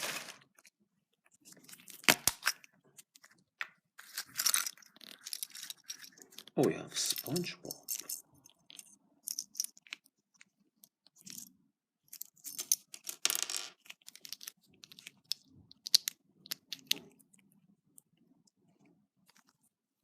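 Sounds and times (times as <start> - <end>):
plastic toy pieces clicking: 7.1 - 10.1, 12.1 - 17.1.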